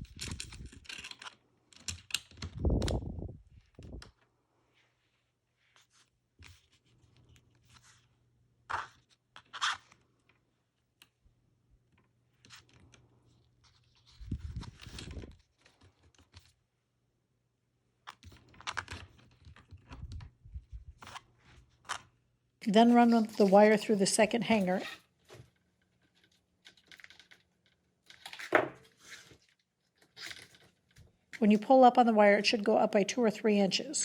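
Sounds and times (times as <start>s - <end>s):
wire clicking and scraping: 0.0s - 4.3s, 20.9s - 31.5s.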